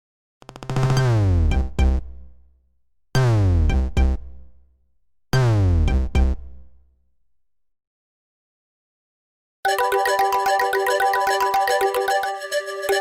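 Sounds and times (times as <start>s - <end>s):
drum machine hits: 1.4s - 2.1s.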